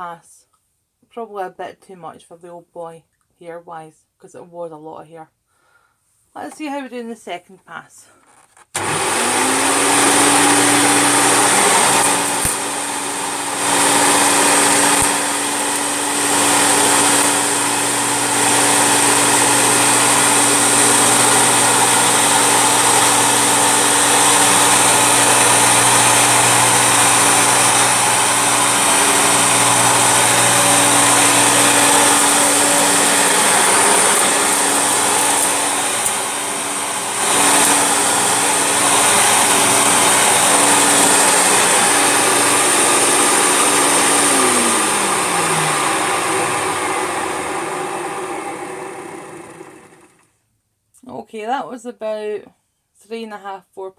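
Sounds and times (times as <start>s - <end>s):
vacuum cleaner running: 8.8s - 50.3s.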